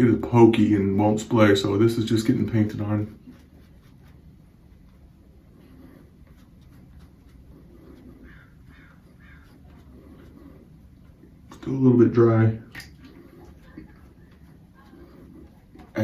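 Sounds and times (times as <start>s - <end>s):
faint distant cries: 8.0s - 10.6s.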